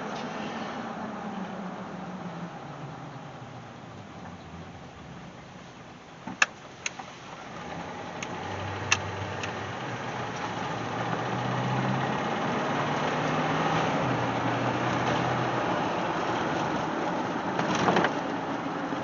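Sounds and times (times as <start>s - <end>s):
engine accelerating: 0.0s - 6.2s, 7.1s - 19.0s
sharp clicks: 8.2s - 9.6s.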